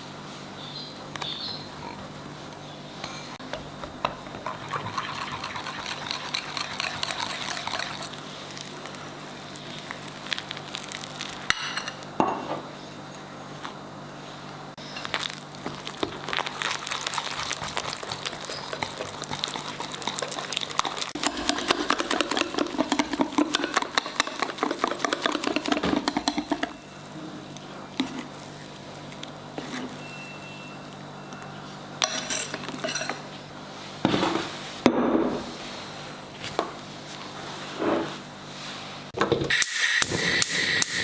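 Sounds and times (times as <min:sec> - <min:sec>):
batter stirred in bowl: 0:04.2 - 0:12.0, 0:14.8 - 0:31.0.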